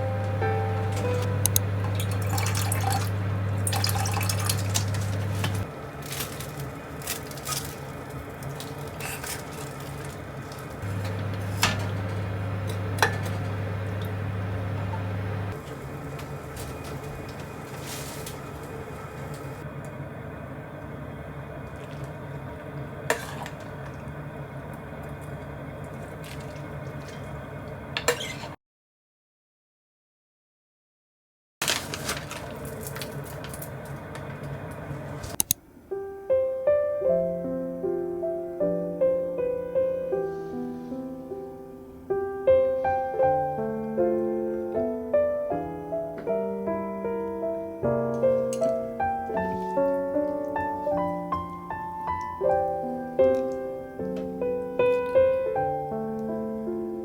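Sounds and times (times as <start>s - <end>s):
gentle piano music: 0.0s - 19.7s, 34.0s - 57.0s
low electrical hum: 0.0s - 28.4s
soft handling sounds: 4.9s - 19.6s
dishes and cutlery clinking: 8.4s - 15.6s.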